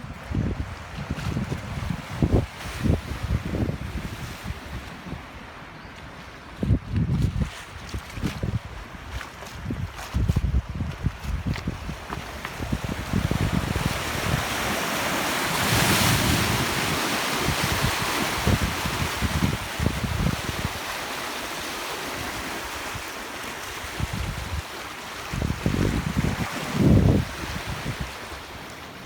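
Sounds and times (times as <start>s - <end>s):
wind buffeting microphone: 0.0s - 20.9s, 23.7s - 29.0s.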